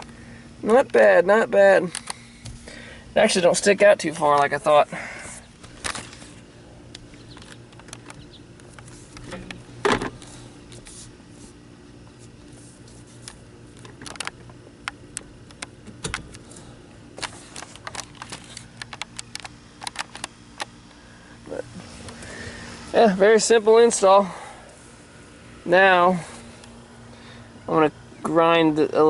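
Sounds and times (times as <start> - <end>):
tools and parts clicking and rattling: 13.2 - 14.9, 15.5 - 20.7.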